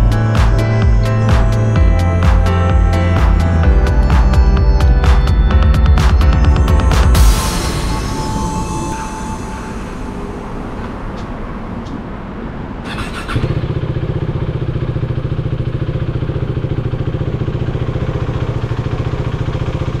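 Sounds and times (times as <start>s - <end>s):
motorcycle engine idling: 0.0s - 7.4s, 12.8s - 20.0s.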